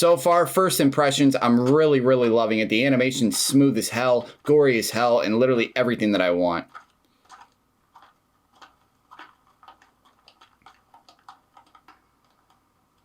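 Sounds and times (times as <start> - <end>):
faint small clicks and ticks: 6.7 - 13.0.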